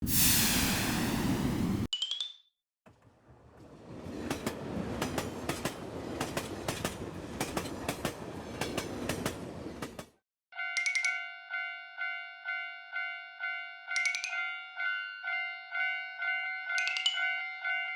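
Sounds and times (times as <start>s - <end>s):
train clickety-clack over rail joints: 2.9s - 10.2s.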